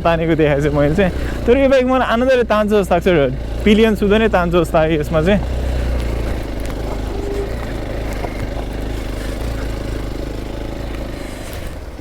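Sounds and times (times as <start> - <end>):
motorcycle engine running at low revs: 0.0 - 12.0.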